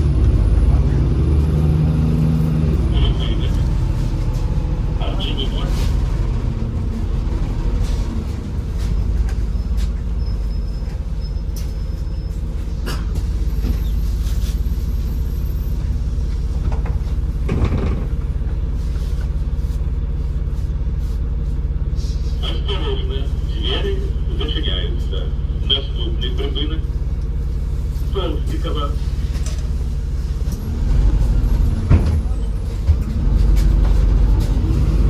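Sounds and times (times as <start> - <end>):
bus engine drone: 0.0 - 35.0
road rumble: 0.0 - 35.0
knocks and rattles: 16.4 - 18.7, 30.7 - 34.6.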